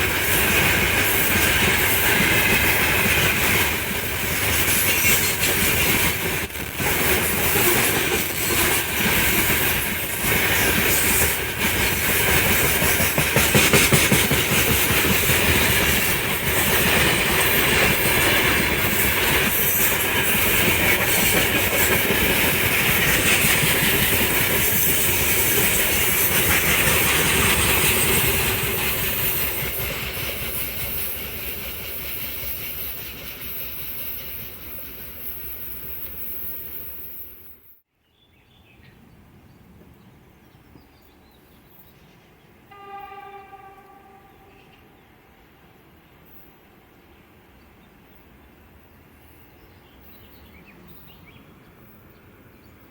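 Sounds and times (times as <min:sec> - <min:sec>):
wheels clacking over rail joints: 0:00.0 - 0:35.1
freight train rolling past: 0:00.0 - 0:37.8, 0:38.9 - 0:52.9.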